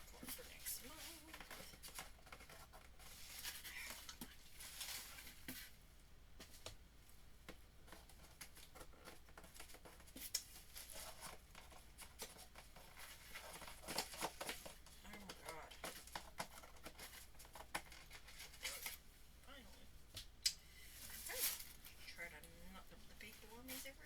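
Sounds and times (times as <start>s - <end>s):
paper and packaging crinkling: 0.0s - 5.8s, 7.8s - 19.1s, 20.8s - 24.0s.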